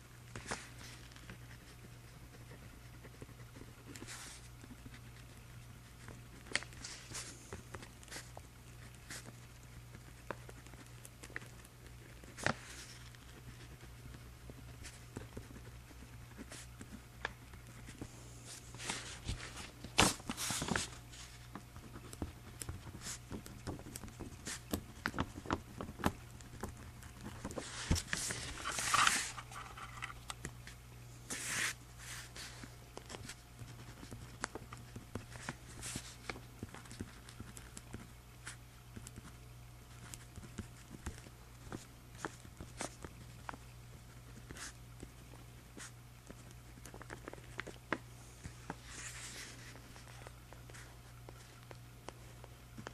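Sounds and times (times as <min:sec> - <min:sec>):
pen scratching on paper: 0:01.3 - 0:06.4, 0:12.1 - 0:17.0
paper rustling: 0:12.2 - 0:13.7, 0:16.4 - 0:39.2, 0:45.8 - 0:51.8.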